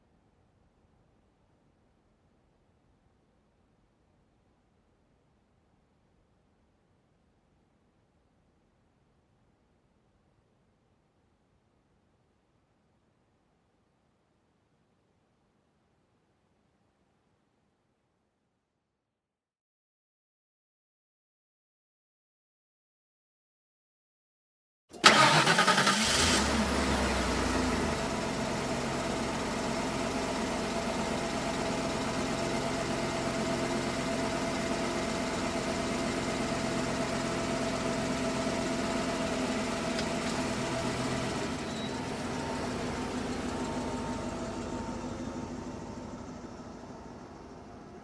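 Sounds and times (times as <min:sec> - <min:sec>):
car engine starting and idling: 0:24.9 - 0:48.0.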